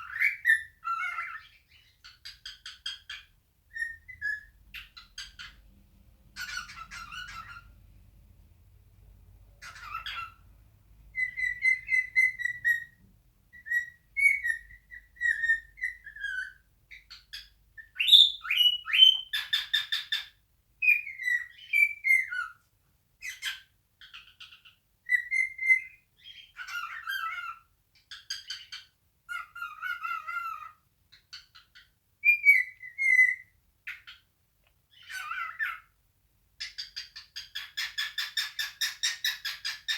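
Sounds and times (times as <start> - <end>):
cockatiel whistling song: 0.0 - 5.6, 6.4 - 7.8, 9.6 - 10.4, 11.1 - 22.6, 23.2 - 34.2, 34.9 - 35.9, 36.6 - 39.9
cockatiel scratchy chatter: 6.4 - 7.7.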